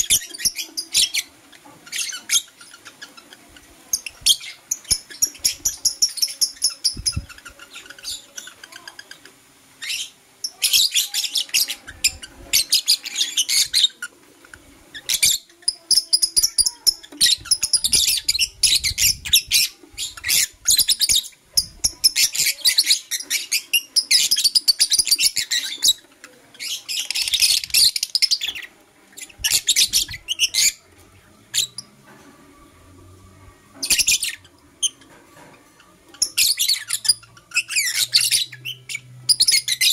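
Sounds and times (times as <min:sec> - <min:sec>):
lovebirds chirping shrilly: 0:36.1 - 0:39.9.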